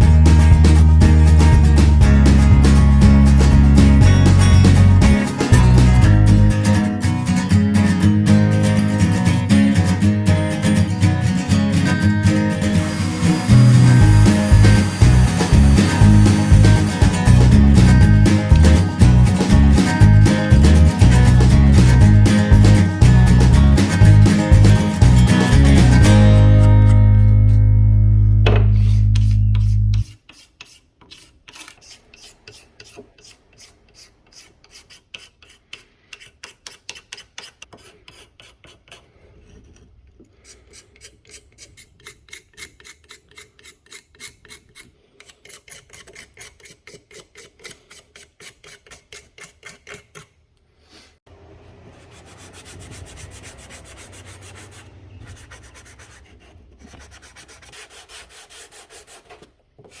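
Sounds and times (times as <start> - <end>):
hand rubbing with abrasive: 12.5 - 26.3, 28.6 - 50.2, 51.9 - 60.0.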